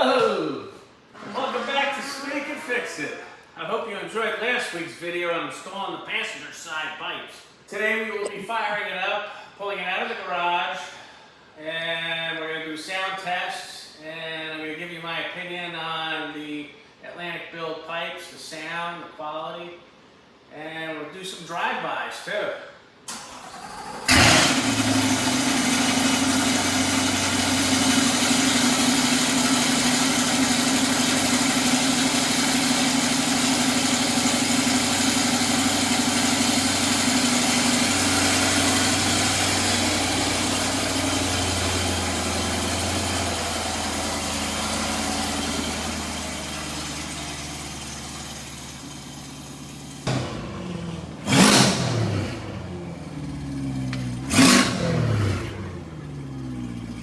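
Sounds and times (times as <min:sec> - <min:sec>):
car engine starting and idling: 0:23.1 - 0:57.0
loud engine bursts: 0:23.1 - 0:57.0.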